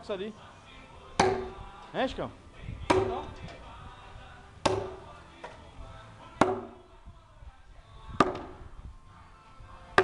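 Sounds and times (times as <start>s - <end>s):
axe chopping firewood: 1.2s - 1.6s, 2.9s - 3.5s, 4.6s - 5.6s, 6.4s - 6.8s, 8.2s - 8.6s.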